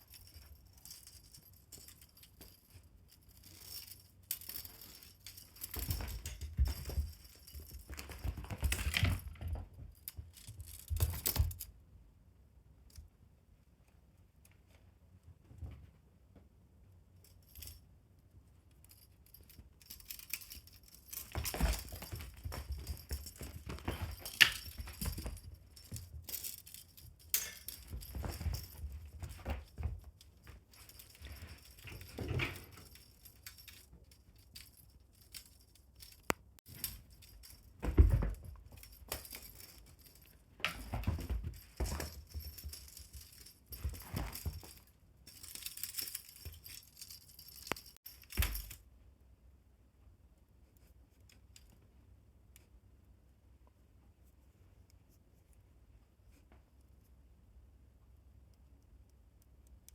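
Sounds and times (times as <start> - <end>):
teaser toy jingling and rattling: 0.0 - 11.7, 18.7 - 48.8.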